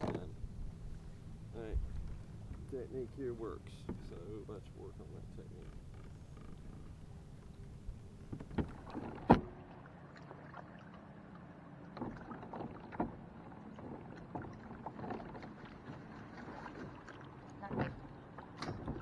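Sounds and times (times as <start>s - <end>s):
low steady background noise: 0.0s - 10.0s.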